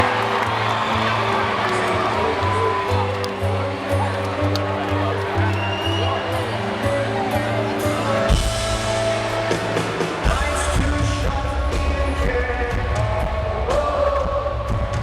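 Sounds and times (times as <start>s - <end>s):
live rock band playing: 0.0s - 15.0s
heavy bass and drum beat: 7.9s - 15.0s.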